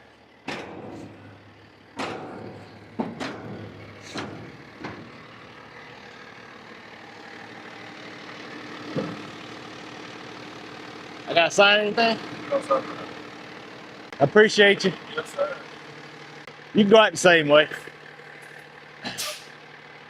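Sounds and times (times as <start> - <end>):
truck engine idling: 0.0 - 20.0
sharp knocks and clunks: 0.4 - 5.4, 8.9 - 9.3.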